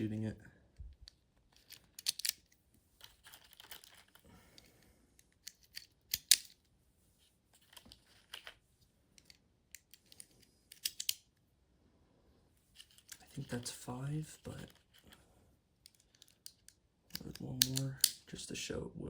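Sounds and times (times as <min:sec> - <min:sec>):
cartridges clicking into magazine: 0:05.4 - 0:06.5, 0:10.7 - 0:11.2, 0:15.9 - 0:18.3.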